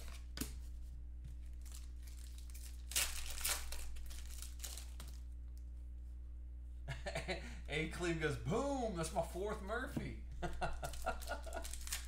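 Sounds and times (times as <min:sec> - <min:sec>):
low electrical hum: 0:00.0 - 0:12.0
card pack crinkling: 0:01.5 - 0:05.3, 0:10.7 - 0:12.0.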